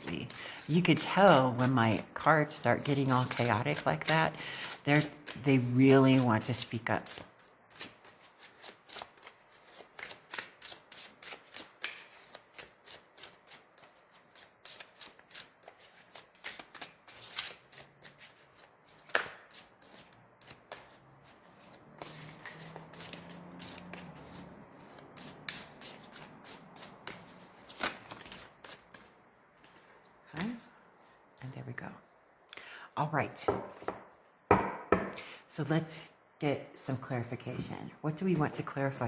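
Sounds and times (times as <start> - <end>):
cards being shuffled: 2.7 - 29.9, 33.6 - 34.0
cards sliding rustle: 2.8 - 30.0.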